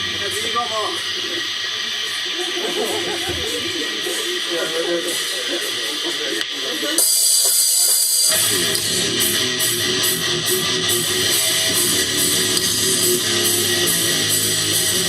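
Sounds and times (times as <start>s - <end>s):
bass guitar: 0.0s - 1.6s, 8.3s - 15.0s
drums and cymbals: 0.0s - 15.0s
electric guitar: 0.0s - 15.0s.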